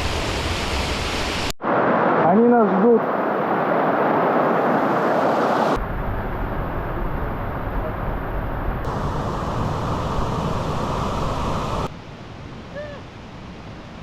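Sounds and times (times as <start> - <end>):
steady rushing noise: 0.0 - 12.5.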